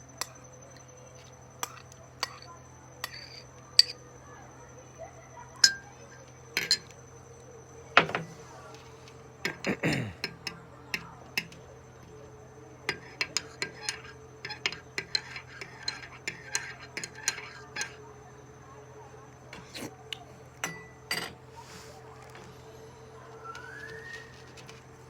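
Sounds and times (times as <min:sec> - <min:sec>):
spoon stirring in a mug: 0:00.1 - 0:04.0, 0:05.6 - 0:07.1, 0:08.0 - 0:18.6, 0:20.6 - 0:22.5
ringing dish clatter: 0:05.6 - 0:06.9, 0:20.6 - 0:21.4
dishes knocking: 0:08.0 - 0:08.3.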